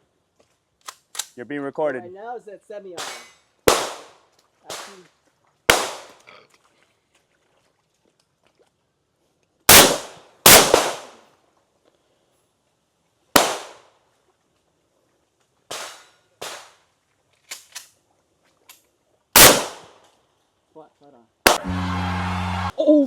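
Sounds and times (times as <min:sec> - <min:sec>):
faint gunshots: 0:03.0 - 0:04.1, 0:05.7 - 0:06.1, 0:09.7 - 0:11.1, 0:13.4 - 0:13.8, 0:19.4 - 0:19.9, 0:21.5 - 0:21.9
rifle shots echoing: 0:03.0 - 0:04.1, 0:05.7 - 0:06.1, 0:09.7 - 0:11.2, 0:13.4 - 0:13.8, 0:19.4 - 0:19.9.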